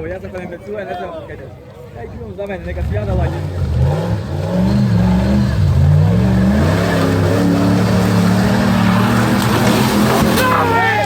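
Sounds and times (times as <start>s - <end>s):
engine revving under load: 2.7s - 10.8s.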